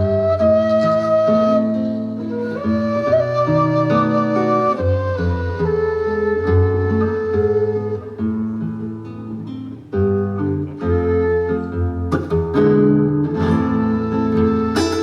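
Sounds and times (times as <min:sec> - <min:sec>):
acoustic guitar: 0:00.0 - 0:15.0.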